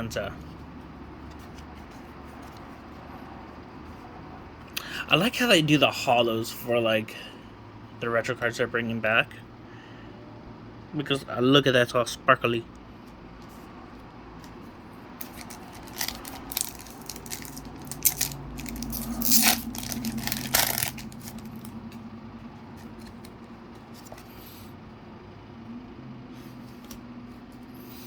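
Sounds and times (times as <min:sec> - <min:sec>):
low steady hum: 0:00.0 - 0:28.0
cards rustling and sliding: 0:00.4 - 0:04.1, 0:13.4 - 0:24.7, 0:26.4 - 0:28.0
foil wrapper tearing and crinkling: 0:15.2 - 0:21.8.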